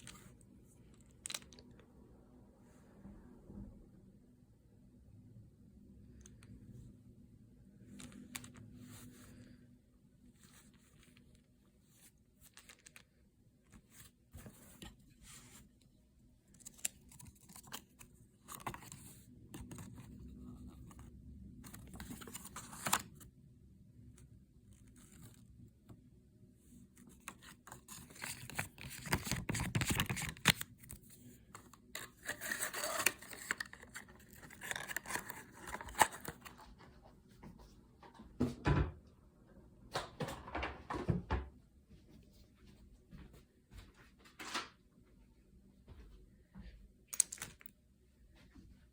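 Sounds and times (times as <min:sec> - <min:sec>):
packaging tearing and rustling: 0:27.4 - 0:31.0, 0:31.9 - 0:36.5.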